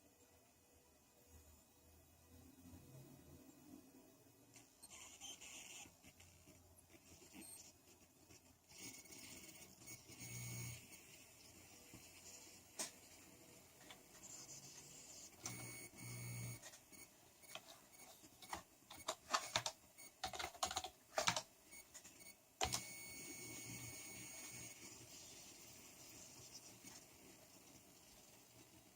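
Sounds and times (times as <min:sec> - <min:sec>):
thin electrical whine: 0:04.5 - 0:28.9
crackling clicks: 0:15.4 - 0:24.7.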